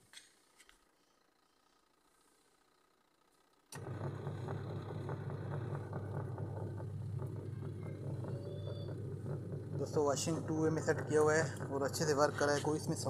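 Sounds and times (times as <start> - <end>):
washing machine motor humming: 3.0 - 13.0.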